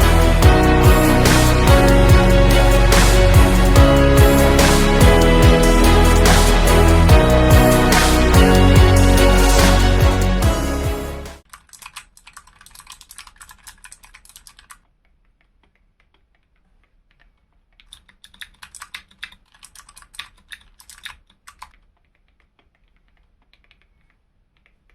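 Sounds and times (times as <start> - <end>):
mechanical keyboard typing: 11.5 - 14.8, 17.8 - 22.5.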